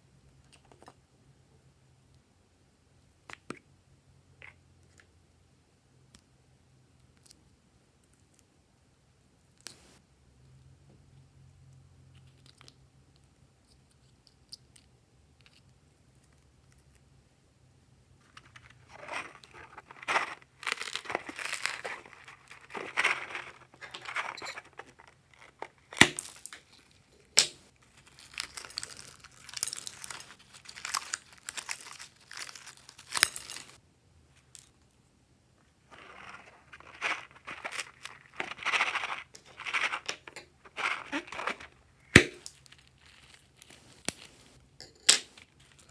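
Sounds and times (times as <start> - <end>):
slime squished and stretched: 27.4 - 33.8.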